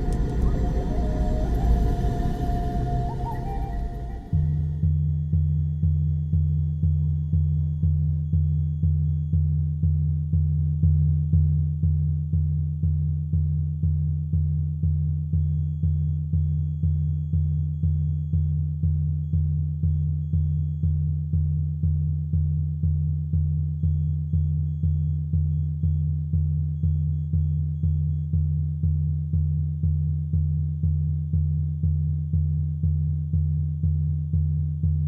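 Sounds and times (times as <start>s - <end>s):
low pulsing synthesized drone: 0.0s - 5.1s.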